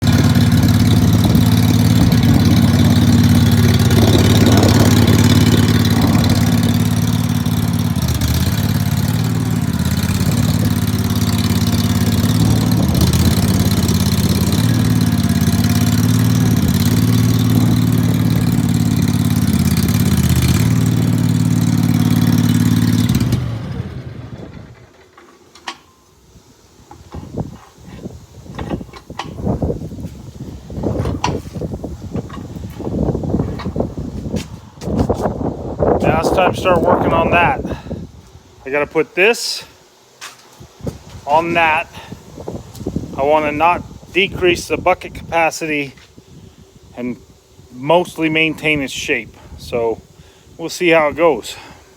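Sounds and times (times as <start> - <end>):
loader engine running: 0.0 - 26.0, 26.8 - 39.1.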